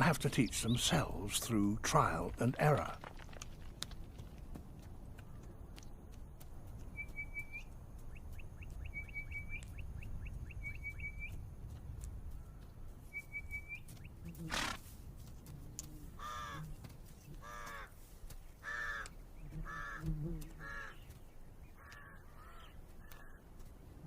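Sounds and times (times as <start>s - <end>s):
low rumble of wind: 0.0s - 24.0s
bird cawing: 16.2s - 16.7s, 17.4s - 17.9s, 18.6s - 21.1s, 21.8s - 23.4s.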